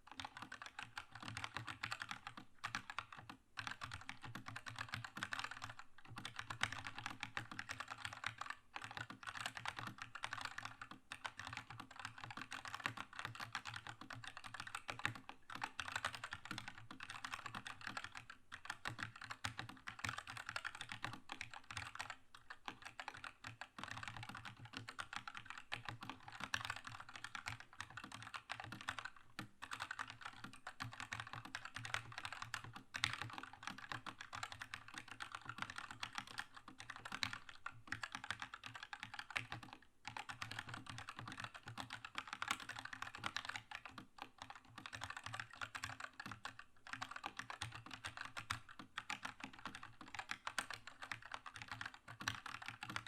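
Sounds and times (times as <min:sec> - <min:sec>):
fast mechanical keyboard typing: 0:00.1 - 0:53.0.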